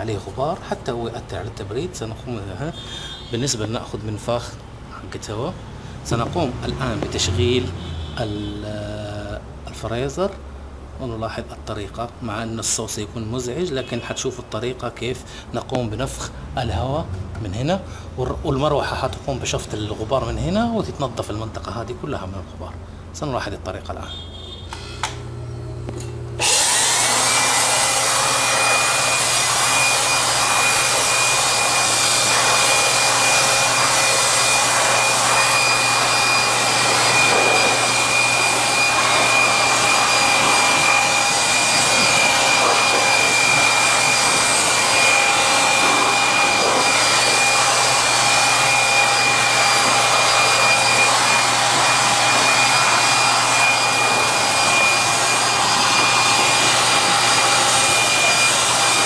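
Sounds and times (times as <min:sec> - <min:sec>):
electric air blower running: 0:24.7 - 0:59.0.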